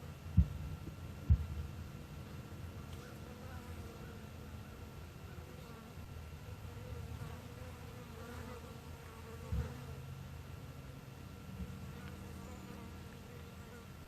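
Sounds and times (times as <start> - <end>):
garden background noise: 0.0 - 14.0
low thump: 0.4 - 1.7
flying insect buzzing: 2.7 - 10.1.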